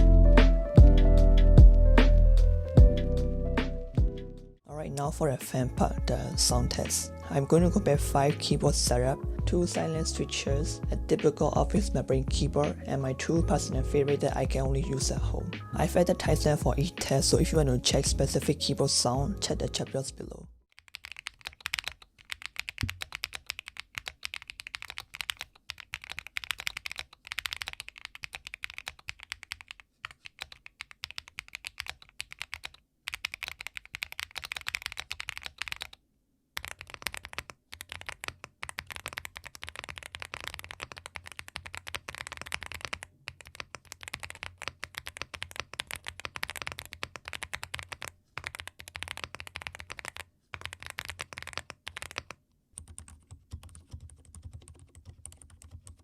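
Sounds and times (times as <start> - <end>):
typing on mechanical keyboard: 20.7 - 36.0, 36.6 - 56.0.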